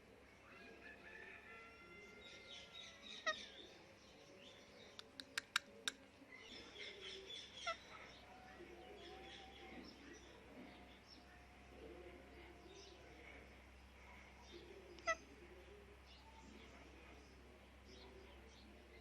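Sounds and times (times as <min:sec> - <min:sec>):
sharp clicks: 0:05.0 - 0:06.0.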